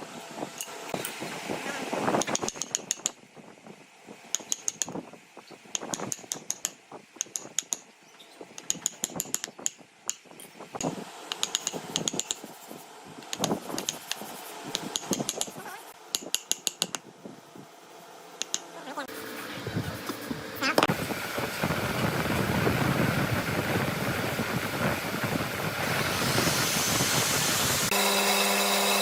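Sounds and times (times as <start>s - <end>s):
sharp metallic taps: 2.2s - 3.2s, 4.3s - 5.0s, 5.7s - 7.8s, 8.6s - 10.3s, 11.3s - 12.4s, 13.2s - 17.0s, 18.4s - 18.6s.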